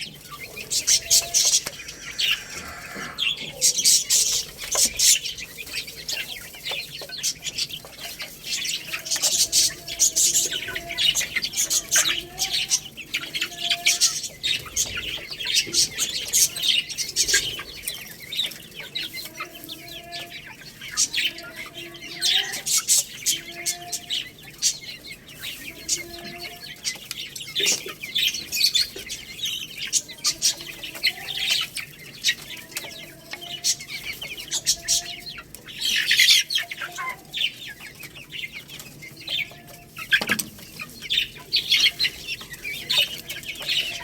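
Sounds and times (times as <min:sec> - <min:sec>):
chicks peeping: 0:00.0 - 0:44.0
low clucks: 0:00.9 - 0:03.7.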